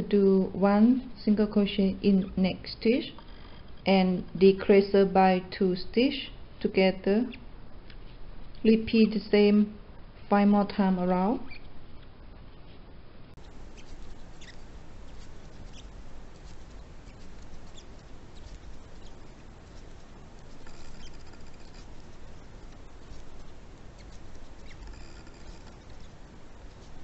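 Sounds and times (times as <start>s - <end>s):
steady background hiss: 0.0s - 27.0s
crochet hook scratching yarn: 13.4s - 27.0s.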